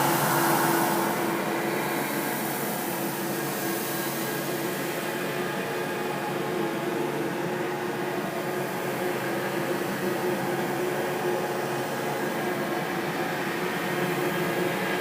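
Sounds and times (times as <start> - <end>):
hiss: 0.0 - 5.2.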